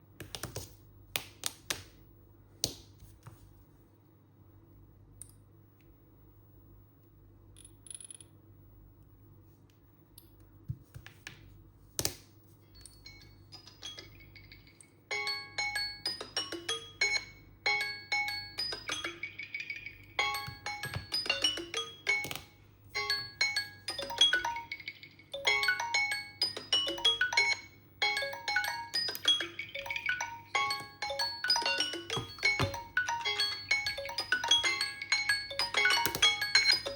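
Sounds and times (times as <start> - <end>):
phone alarm melody: 23.0 - 36.9.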